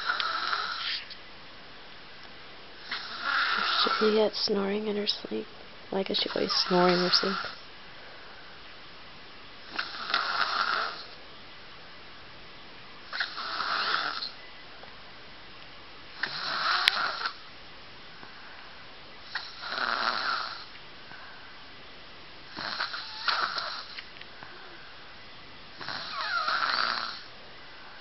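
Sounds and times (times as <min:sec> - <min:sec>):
person snoring: 0:00.0 - 0:01.0, 0:02.8 - 0:04.2, 0:06.6 - 0:07.6, 0:09.7 - 0:11.1, 0:13.1 - 0:14.4, 0:16.2 - 0:17.4, 0:19.3 - 0:20.7, 0:22.5 - 0:24.0, 0:25.8 - 0:27.3
quiet breathing: 0:02.7 - 0:08.8, 0:16.1 - 0:21.8, 0:22.5 - 0:28.0.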